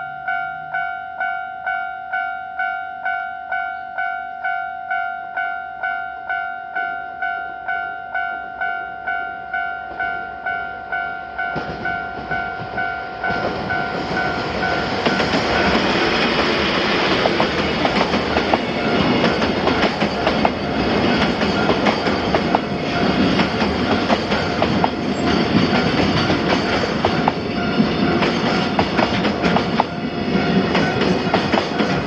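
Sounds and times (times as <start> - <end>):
train rumble: 11.2 - 32.0.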